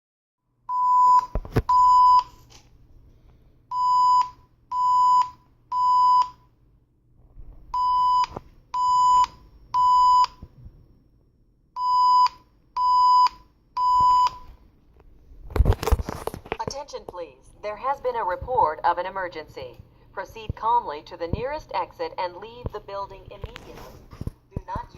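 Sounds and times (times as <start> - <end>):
fire alarm beeps: 0.7 - 2.4, 3.7 - 6.5, 7.7 - 10.4, 11.8 - 14.5.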